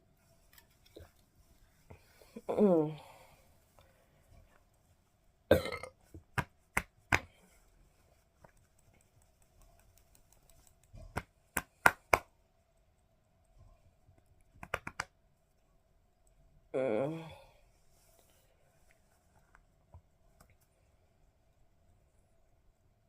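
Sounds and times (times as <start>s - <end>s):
person burping: 5.5s - 6.0s.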